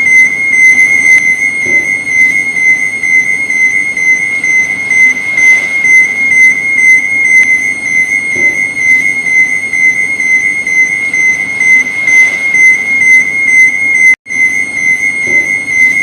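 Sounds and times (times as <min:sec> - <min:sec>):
high-pitched warbling alarm tone: 0:00.0 - 0:16.0.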